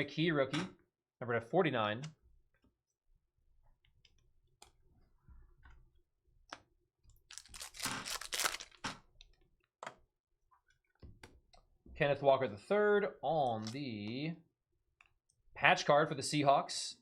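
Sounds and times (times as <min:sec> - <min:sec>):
plastic wrapper crinkling: 0:07.2 - 0:08.9.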